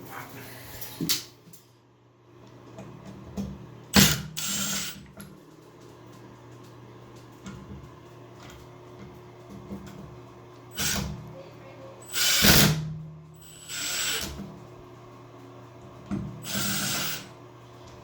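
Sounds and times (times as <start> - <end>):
cordless drill running: 4.0 - 5.0, 10.8 - 11.0, 12.1 - 12.8, 13.4 - 14.4, 16.4 - 17.3.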